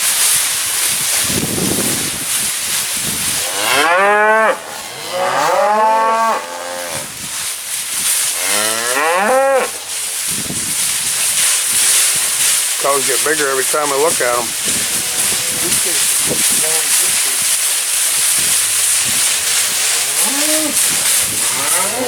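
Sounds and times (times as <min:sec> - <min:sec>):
steady hiss: 0:00.0 - 0:22.0
cattle mooing: 0:03.4 - 0:07.1, 0:08.4 - 0:09.9, 0:14.7 - 0:16.1, 0:19.7 - 0:22.0.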